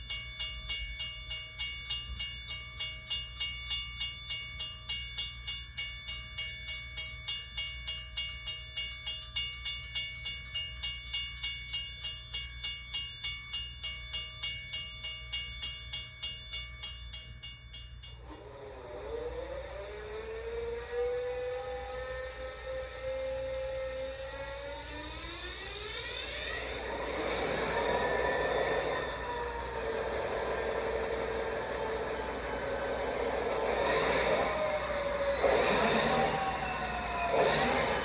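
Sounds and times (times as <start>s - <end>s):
railroad bell ringing: 0.0s - 19.9s, 20.8s - 38.0s
whine rising in pitch: 17.5s - 38.0s.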